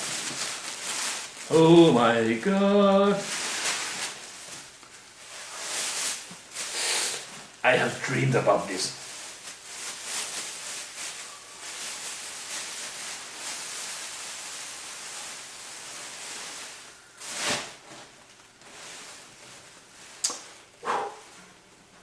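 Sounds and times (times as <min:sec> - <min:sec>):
wrapping rustling: 0:00.0 - 0:20.7
sharp snap: 0:20.2 - 0:20.5.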